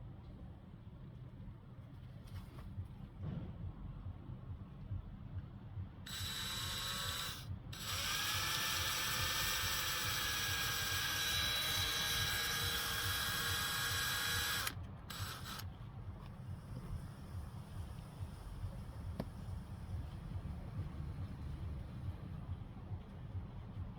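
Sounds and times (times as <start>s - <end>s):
electric drill whining: 6.1s - 15.7s.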